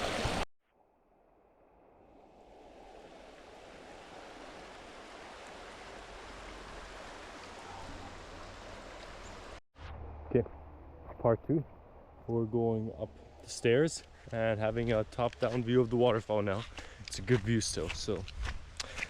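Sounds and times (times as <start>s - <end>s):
waterfall rushing: 2.5s - 9.6s.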